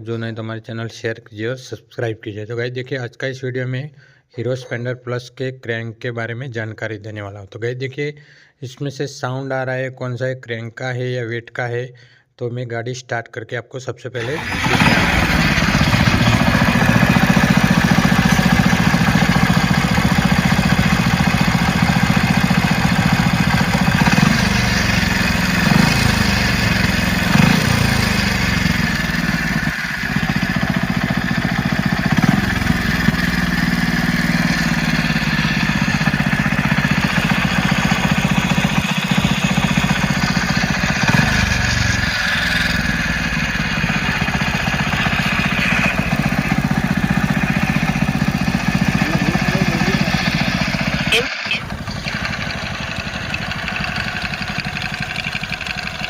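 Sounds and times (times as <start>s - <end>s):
abnormal mechanical engine noise: 14.2s - 56.0s
motorcycle engine idling: 14.3s - 56.0s.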